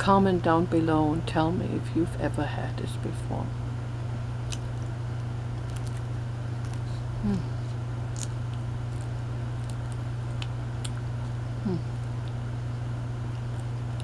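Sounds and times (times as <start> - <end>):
steady low hum: 0.0 - 14.0
chewing bread: 4.4 - 14.0
short mm vocal sound: 11.6 - 11.9.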